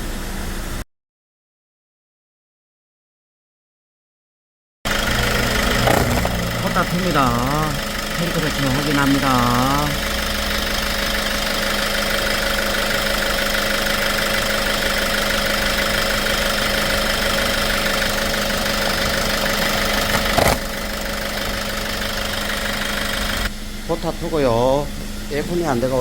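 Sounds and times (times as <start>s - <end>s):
diesel engine idling: 4.9s - 26.0s.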